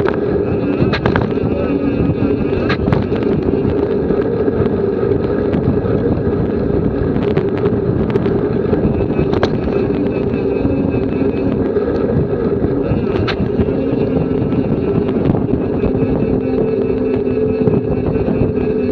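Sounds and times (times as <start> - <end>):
constant hum: 0.0 - 18.9
wind rushing over microphone: 0.0 - 18.9.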